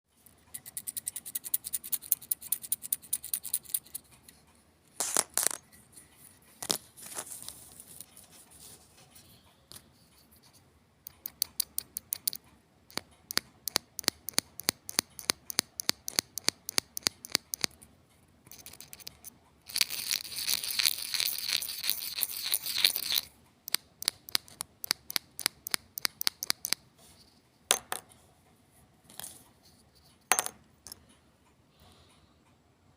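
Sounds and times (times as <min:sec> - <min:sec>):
thimble and needles clicking: 0:00.2 - 0:08.3, 0:09.6 - 0:26.8.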